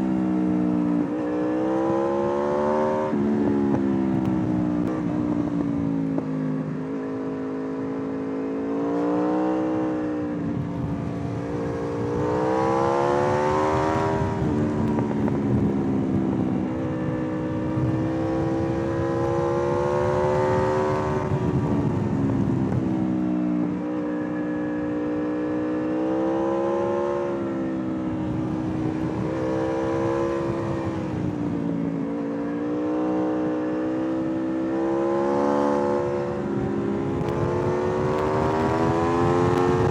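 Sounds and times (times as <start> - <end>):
motorcycle engine revving: 0.0 - 39.9
wind noise: 8.7 - 39.9.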